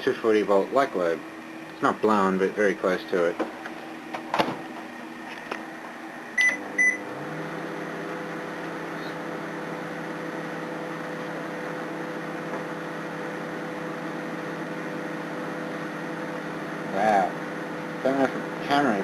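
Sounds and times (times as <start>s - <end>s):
microwave oven humming: 0.0s - 19.0s
microwave keypad beeps: 6.4s - 7.1s.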